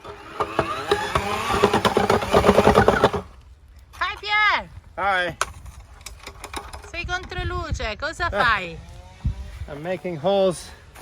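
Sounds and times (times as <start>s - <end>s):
post-hole auger boring: 0.0s - 3.3s.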